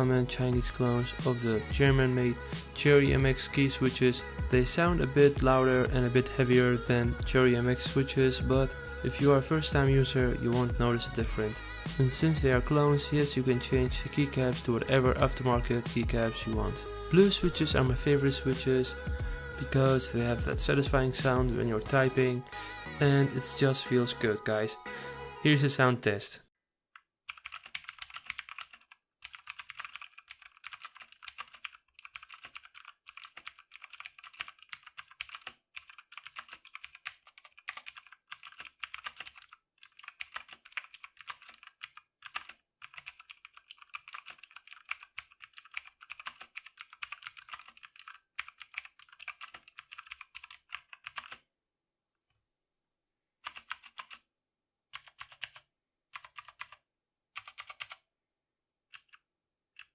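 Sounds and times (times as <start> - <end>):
mechanical keyboard typing: 27.3 - 51.4, 53.4 - 54.2, 55.0 - 55.6, 56.2 - 56.8, 57.4 - 58.0, 59.0 - 59.2.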